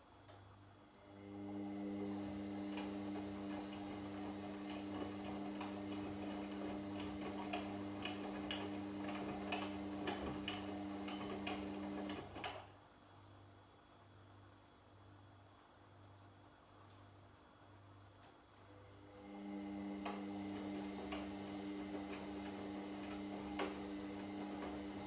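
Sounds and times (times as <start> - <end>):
washing machine motor humming: 1.1 - 12.6, 18.8 - 25.0.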